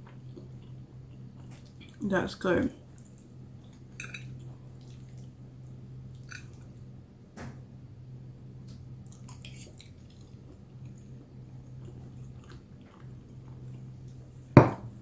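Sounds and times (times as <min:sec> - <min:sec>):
person chewing: 0:09.0 - 0:14.5.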